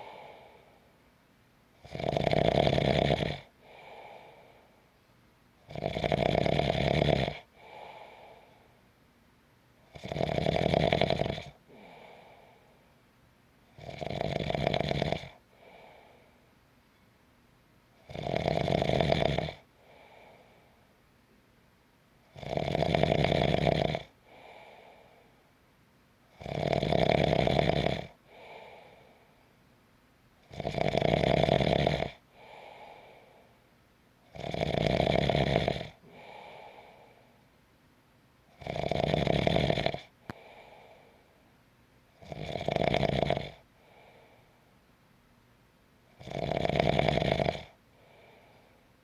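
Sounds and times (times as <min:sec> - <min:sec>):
faint breath sound: 0:00.0 - 0:01.1, 0:03.4 - 0:05.2, 0:07.4 - 0:09.0, 0:11.6 - 0:13.1, 0:15.3 - 0:16.7, 0:19.6 - 0:21.1, 0:24.1 - 0:25.6, 0:28.1 - 0:29.6, 0:32.2 - 0:33.8, 0:35.9 - 0:37.5, 0:40.1 - 0:41.6, 0:43.6 - 0:44.9, 0:47.6 - 0:49.0
person snoring: 0:01.8 - 0:04.4, 0:05.7 - 0:08.4, 0:09.9 - 0:12.4, 0:13.8 - 0:16.1, 0:18.1 - 0:20.4, 0:22.4 - 0:25.0, 0:26.4 - 0:29.1, 0:30.5 - 0:33.2, 0:34.3 - 0:37.0, 0:38.6 - 0:41.1, 0:42.2 - 0:44.0, 0:46.2 - 0:48.4.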